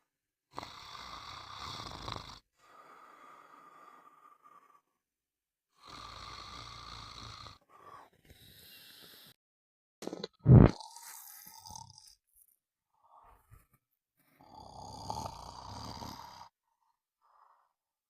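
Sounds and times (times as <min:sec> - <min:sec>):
person snoring: 0:00.5 - 0:04.9, 0:05.8 - 0:09.3, 0:10.1 - 0:12.2, 0:14.4 - 0:16.6.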